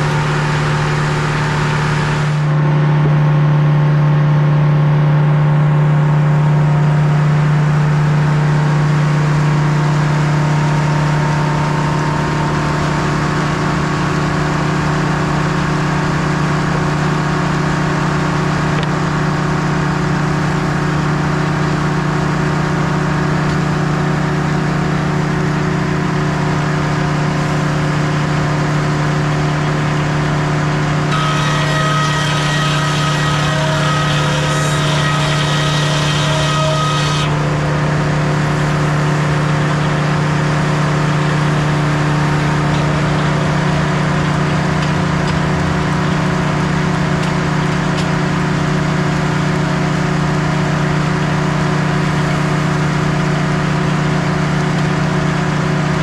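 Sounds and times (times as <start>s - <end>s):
sawmill engine sawing log: 0.0s - 56.0s.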